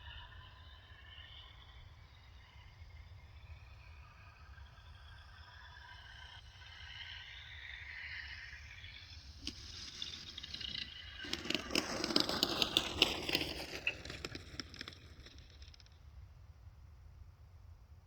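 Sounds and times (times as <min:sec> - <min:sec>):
electric motor whine winding down: 0:00.0 - 0:14.1
rattles and clicks: 0:08.8 - 0:16.0.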